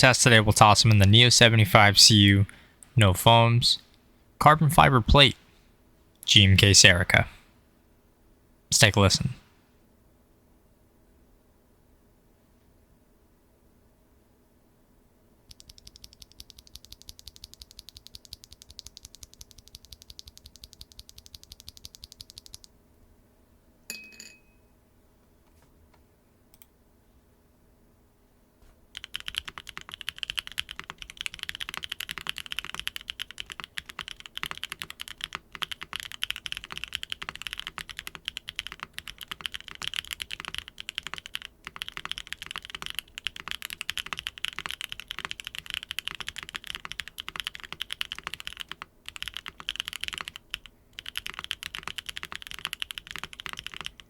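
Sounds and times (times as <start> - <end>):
mechanical keyboard typing: 15.5 - 22.7, 29.0 - 54.0.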